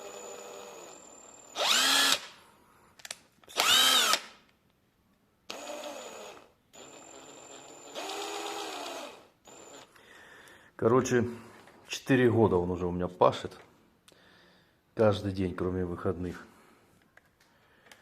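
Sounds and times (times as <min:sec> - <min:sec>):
impact wrench motor whine: 0:00.0 - 0:02.4, 0:03.5 - 0:04.4, 0:05.5 - 0:09.9.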